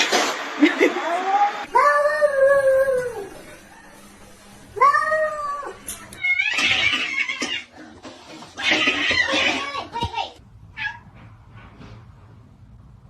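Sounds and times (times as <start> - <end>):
cat meowing: 4.8 - 7.7.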